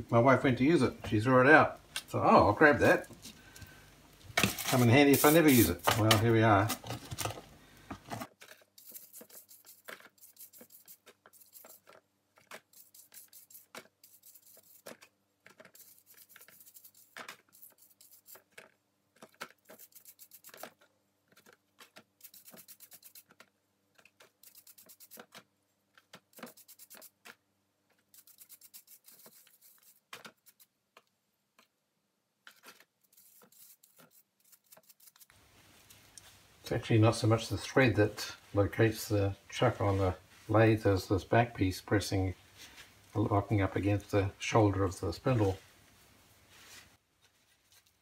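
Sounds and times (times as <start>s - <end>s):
brush scrubbing metal parts: 4.4s - 7.0s, 8.1s - 23.4s, 24.0s - 25.4s, 26.2s - 27.3s, 28.0s - 30.8s, 32.5s - 36.1s.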